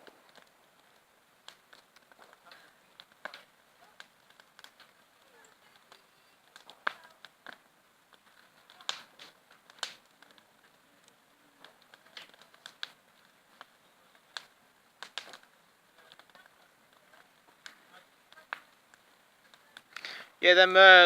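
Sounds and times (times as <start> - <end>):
sharp pops from fire: 0.0 - 20.5
bonfire crackling: 0.0 - 21.0.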